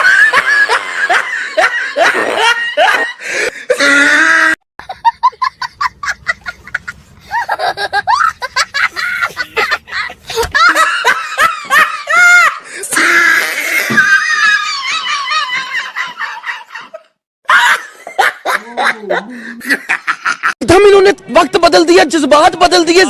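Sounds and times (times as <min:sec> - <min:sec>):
people laughing: 0:04.8 - 0:20.6.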